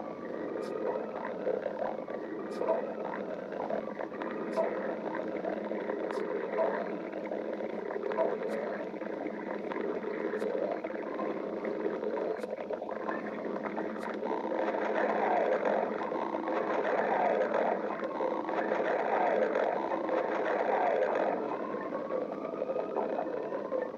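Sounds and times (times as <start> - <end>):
stomach growling: 0.0 - 23.9
thin rising whine: 0.0 - 23.9.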